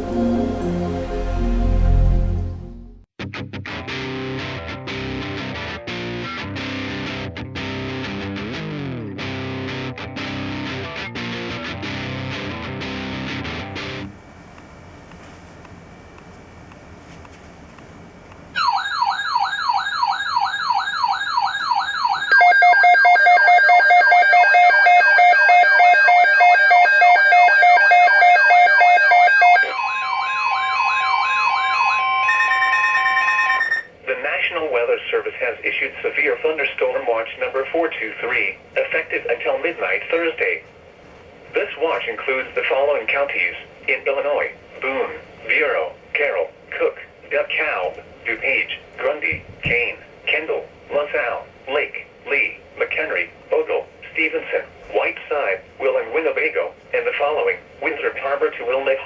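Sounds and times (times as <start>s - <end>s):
steady alarm tone: 0.0s - 2.9s, 18.6s - 33.9s
music with electric guitar chords: 0.0s - 14.1s
electronic siren warbling: 18.6s - 33.9s.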